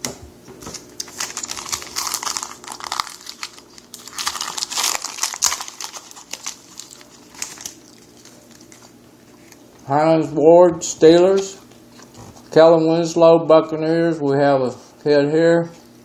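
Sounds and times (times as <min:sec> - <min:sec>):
wrapper crackling and crinkling: 0:01.0 - 0:09.7.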